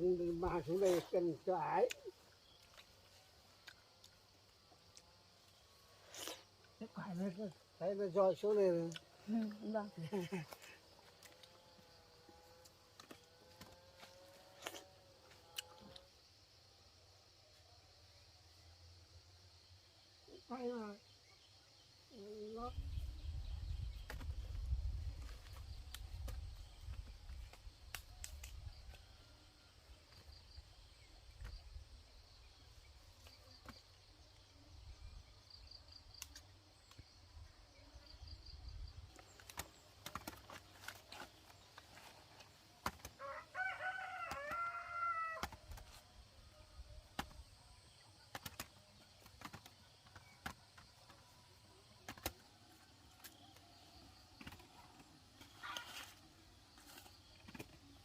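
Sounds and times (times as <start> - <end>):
rooster crowing: 43.2 - 45.4.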